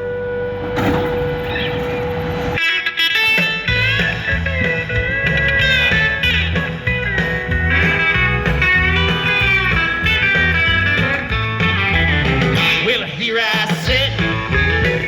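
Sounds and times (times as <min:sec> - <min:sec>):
country guitar with bent notes: 0:00.0 - 0:15.0
steady bass line: 0:03.7 - 0:13.0, 0:13.9 - 0:15.0.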